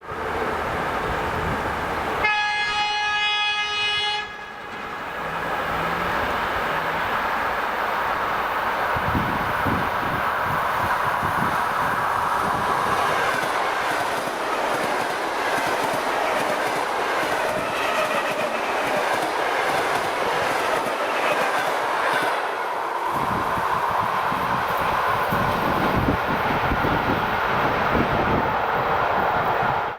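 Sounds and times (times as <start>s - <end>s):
train wheels rumbling on rails: 4.6s - 29.9s.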